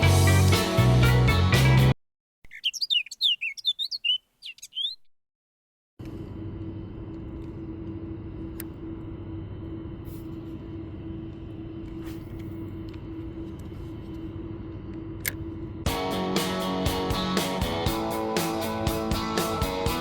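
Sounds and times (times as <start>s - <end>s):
car engine drone: 6.0s - 20.0s.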